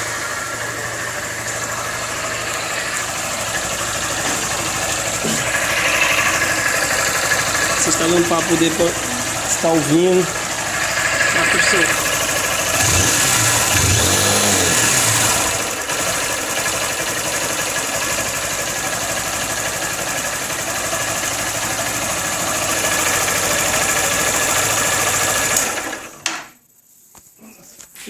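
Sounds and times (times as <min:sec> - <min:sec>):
buzz in engine: 0:00.0 - 0:19.3
motorcycle engine running: 0:00.0 - 0:26.2.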